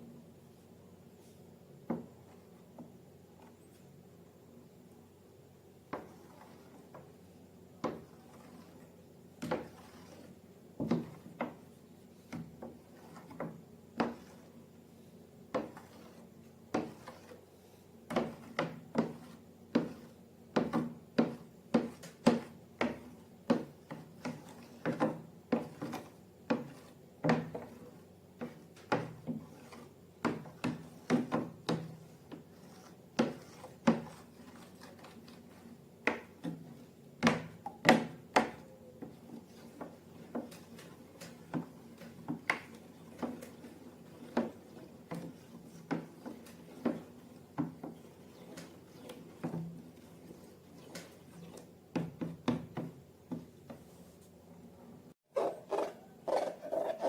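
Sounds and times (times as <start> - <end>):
hard objects tapping and knocking: 51.9 - 53.9.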